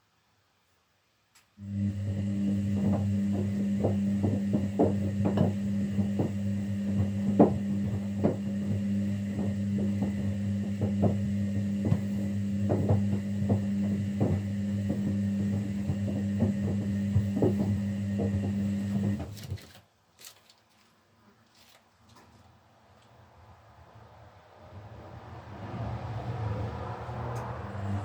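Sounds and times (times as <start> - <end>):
washing machine low hum: 1.6 - 19.6, 24.6 - 28.0
irregular knocks and taps: 2.6 - 19.4.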